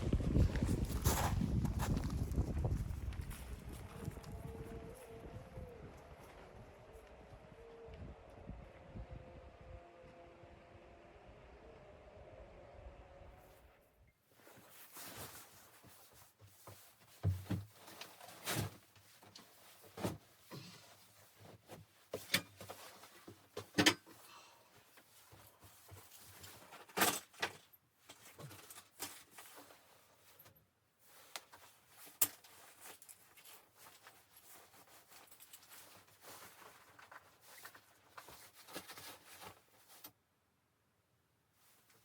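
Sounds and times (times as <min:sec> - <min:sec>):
objects being handled: 0:14.4 - 0:40.2.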